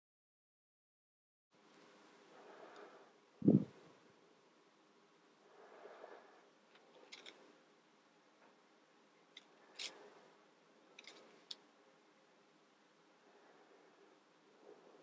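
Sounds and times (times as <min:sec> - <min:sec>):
plastic pieces clicking together: 0:11.0 - 0:11.6.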